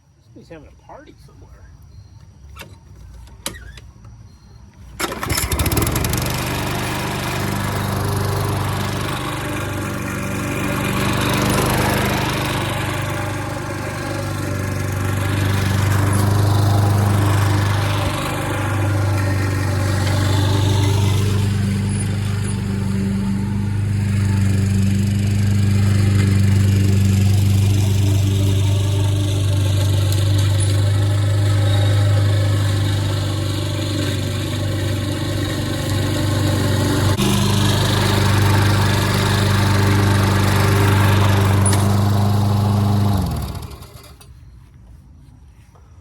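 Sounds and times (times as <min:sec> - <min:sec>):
lawn mower engine running: 0:02.4 - 0:45.0.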